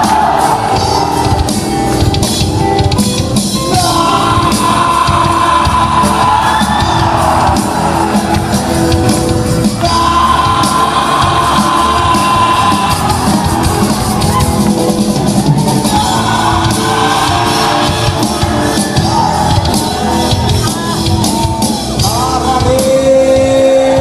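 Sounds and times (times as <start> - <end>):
rock band playing: 0.0 - 24.0
person singing long notes: 3.6 - 7.6, 9.7 - 14.6, 15.8 - 24.0.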